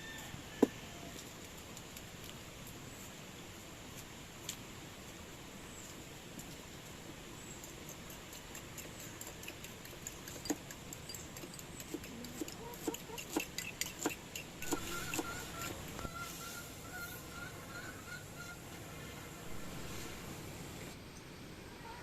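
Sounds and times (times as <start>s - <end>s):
steady hiss: 0.4s - 8.8s, 13.9s - 21.7s
chickens clucking: 10.4s - 21.0s.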